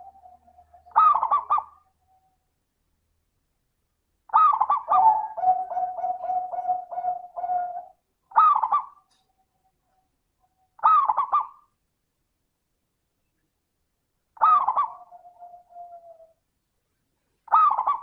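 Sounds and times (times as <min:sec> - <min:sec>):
dove cooing: 0:00.0 - 0:02.2, 0:04.3 - 0:09.2, 0:10.8 - 0:11.6, 0:14.4 - 0:16.4, 0:17.5 - 0:18.0.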